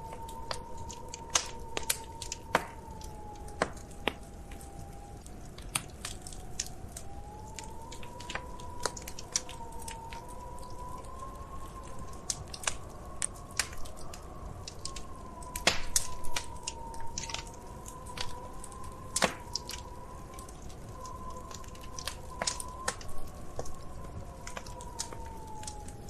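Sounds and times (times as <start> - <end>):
wood fire crackling and popping: 0.0 - 26.0
faint wavering whistle: 6.3 - 26.0.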